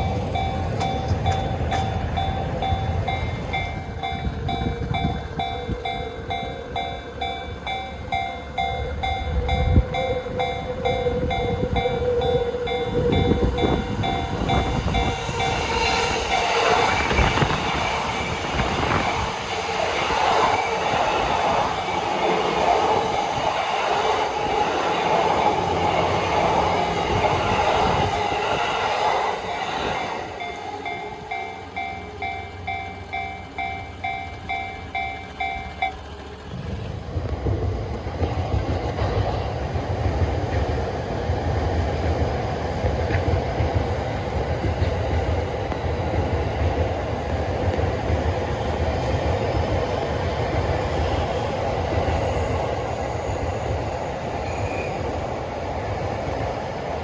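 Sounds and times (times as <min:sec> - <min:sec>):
crossing warning bell ringing: 0:00.0 - 0:17.6, 0:29.4 - 0:36.6, 0:50.3 - 0:57.0
train passing: 0:00.0 - 0:57.0.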